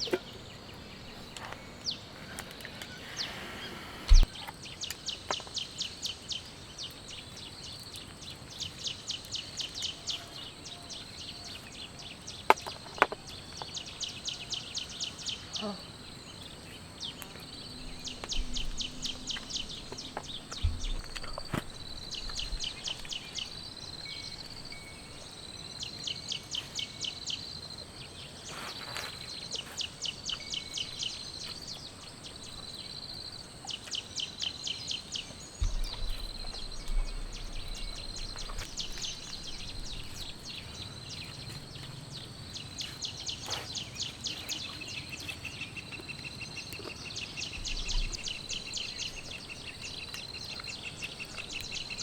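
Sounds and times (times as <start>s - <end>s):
insects chirping: 0.0s - 52.0s
low thumps: 4.0s - 4.3s, 17.8s - 23.2s, 35.6s - 40.4s.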